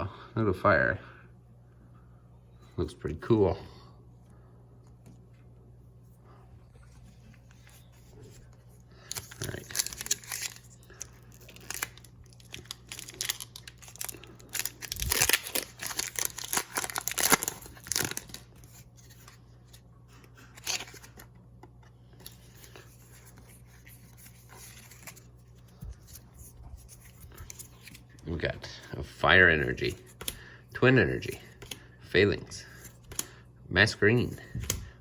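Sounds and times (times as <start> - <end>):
cards being handled: 6.8 - 28.2, 29.6 - 31.9, 32.6 - 33.4, 34.1 - 34.9
foil wrapper tearing and crinkling: 9.0 - 19.4, 20.5 - 21.3.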